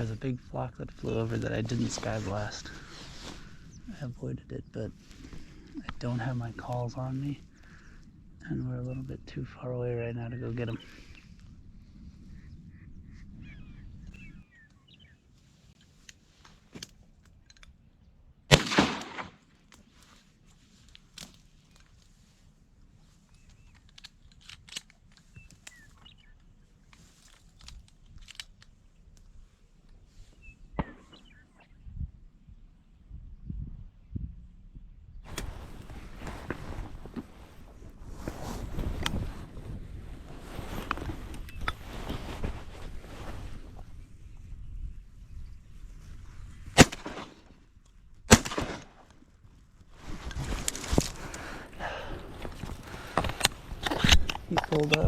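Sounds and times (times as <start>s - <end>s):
low wind rumble: 0.0s - 16.4s, 17.0s - 55.0s
faint bird chirps: 7.4s - 15.7s, 25.2s - 27.1s, 28.8s - 35.2s
rustling with small clicks: 14.0s - 18.0s, 18.9s - 30.6s, 35.3s - 44.0s, 45.9s - 55.0s
shotgun shots echoing: 18.5s - 19.5s, 30.8s - 31.3s, 46.8s - 47.5s, 48.3s - 49.0s
small ticks and clicks: 23.2s - 29.3s.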